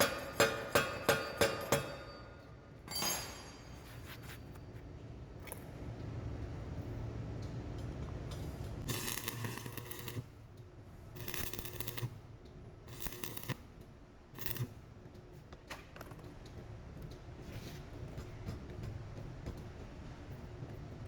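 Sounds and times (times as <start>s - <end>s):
welding arc crackling: 8.8s - 10.3s, 11.1s - 12.2s, 12.9s - 13.7s, 14.3s - 14.8s.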